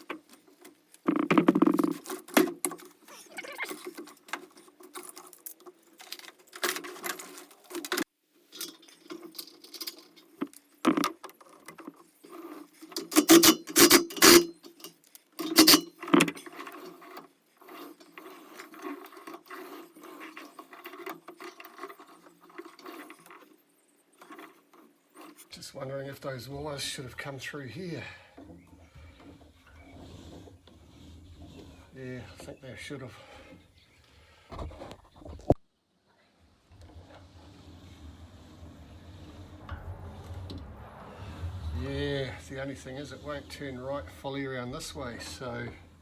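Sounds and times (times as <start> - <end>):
tools and parts clicking: 0.0 - 12.0, 12.8 - 23.5.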